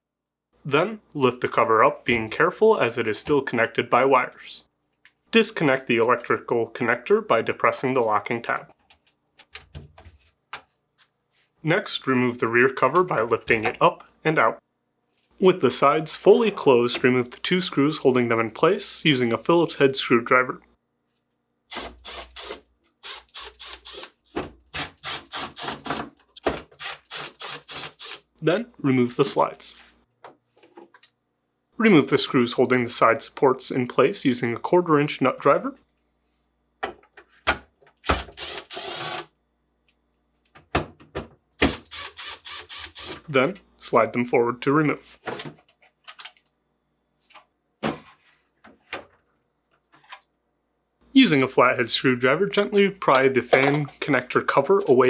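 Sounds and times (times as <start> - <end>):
screwdriver scraping strokes: 21.7 - 24.2, 26.8 - 28.2, 38.4 - 39.2, 41.8 - 43.2.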